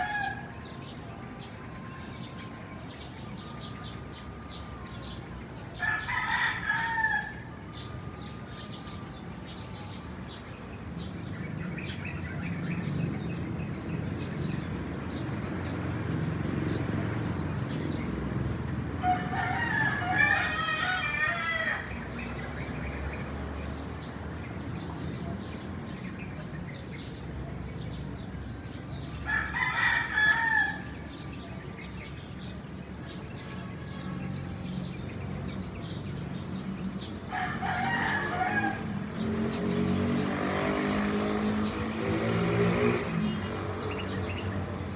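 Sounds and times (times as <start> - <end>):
rooster crowing: 0.0 - 0.6, 5.8 - 7.9, 19.0 - 22.0, 29.2 - 31.0, 37.3 - 39.0
distant rooster crowing: 0.0 - 0.9, 5.7 - 10.0, 19.0 - 22.3, 29.1 - 31.2, 36.9 - 39.7.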